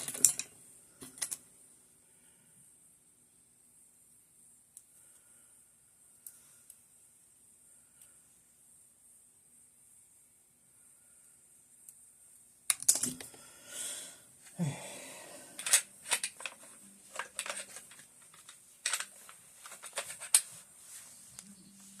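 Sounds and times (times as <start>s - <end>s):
metal rifle parts clicking: 0.0s - 1.4s, 12.7s - 13.3s, 15.5s - 20.6s.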